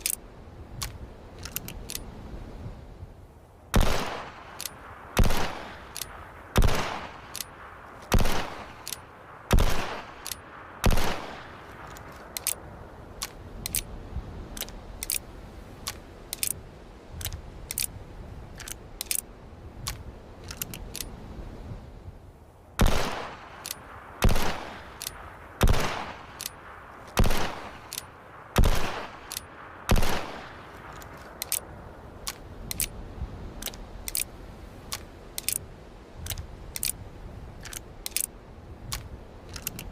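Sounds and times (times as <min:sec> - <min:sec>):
small metallic clicks: 0:00.0 - 0:02.1, 0:04.4 - 0:04.8, 0:05.6 - 0:06.2, 0:07.2 - 0:09.1, 0:10.2 - 0:10.5, 0:11.6 - 0:12.6, 0:13.2 - 0:13.9, 0:14.5 - 0:16.6, 0:17.2 - 0:21.2, 0:23.4 - 0:23.9, 0:24.8 - 0:25.2, 0:26.1 - 0:28.2, 0:29.0 - 0:29.6, 0:30.2 - 0:33.0, 0:33.6 - 0:37.0, 0:37.6 - 0:39.9
revolver gunshots: 0:03.8 - 0:11.6, 0:22.8 - 0:23.6, 0:24.2 - 0:25.0, 0:25.6 - 0:26.4, 0:27.2 - 0:28.0, 0:28.6 - 0:30.7.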